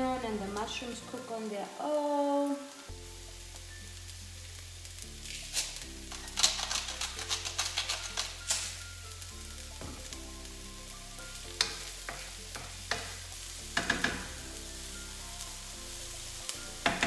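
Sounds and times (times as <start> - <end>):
vegetables sizzling in a pan: 0.0 - 17.0
utensil knocking in a pan: 11.6 - 14.5, 16.8 - 17.0.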